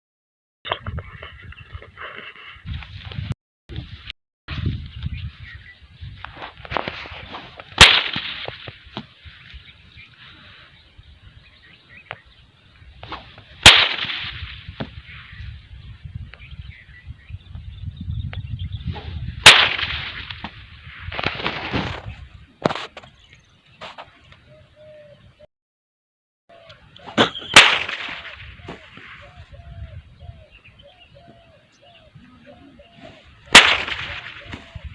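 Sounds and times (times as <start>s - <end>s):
rope whip cracks: 6.7s - 9.1s, 13.0s - 15.0s, 19.0s - 22.1s, 27.0s - 29.2s, 33.5s - 34.9s.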